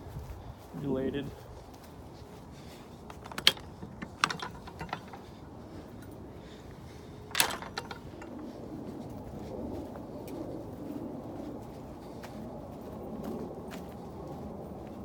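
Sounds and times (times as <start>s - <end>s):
sharp clicks and knocks: 3.1s - 5.4s, 7.3s - 8.5s.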